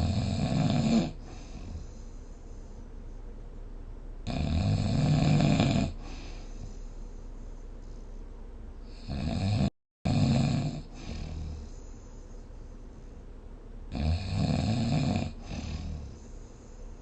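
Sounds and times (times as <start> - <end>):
person snoring: 0.0 - 2.0, 4.3 - 6.7, 8.9 - 12.0, 13.9 - 16.4.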